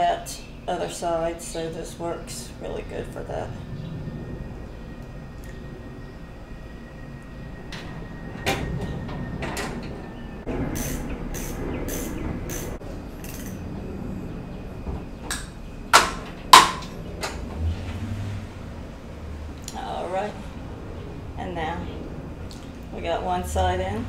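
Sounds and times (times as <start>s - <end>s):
sharp knocks: 14.9s - 17.4s.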